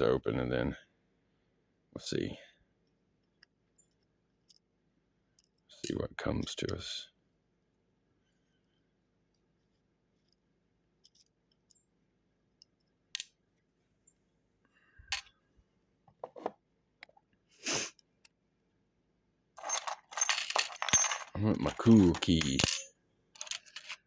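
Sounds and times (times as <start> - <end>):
metal clinking: 19.6 - 24.0.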